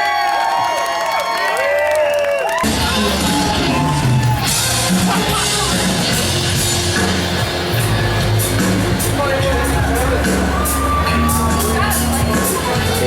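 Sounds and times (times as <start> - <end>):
live rock band playing: 2.6 - 13.0.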